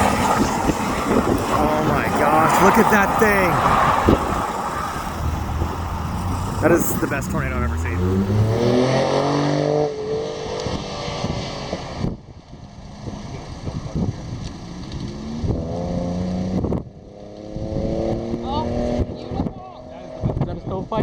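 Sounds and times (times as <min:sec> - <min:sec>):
wind rumble on microphone: 0:00.0 - 0:02.0, 0:03.6 - 0:06.7
vehicles driving past: 0:00.0 - 0:10.8, 0:12.6 - 0:20.2.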